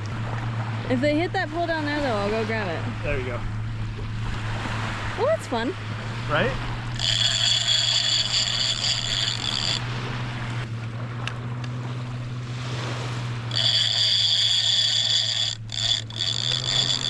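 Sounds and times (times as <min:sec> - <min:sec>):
low hum: 0:00.0 - 0:17.0
fishing reel clicker buzzing: 0:06.9 - 0:10.1, 0:13.5 - 0:17.0.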